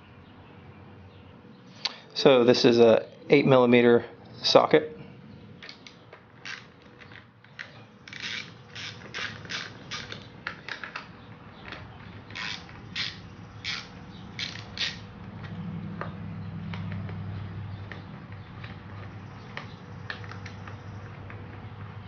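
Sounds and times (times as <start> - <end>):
ratchet wrench clicking: 6.4 - 6.7, 8.1 - 10.2, 12.3 - 15.0.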